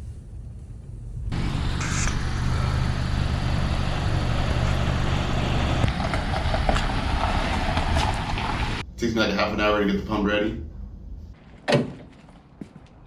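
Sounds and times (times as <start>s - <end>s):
truck engine running: 1.3s - 8.8s.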